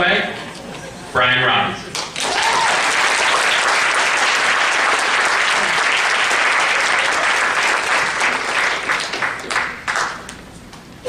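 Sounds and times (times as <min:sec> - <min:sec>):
audience applauding: 0:01.9 - 0:10.4.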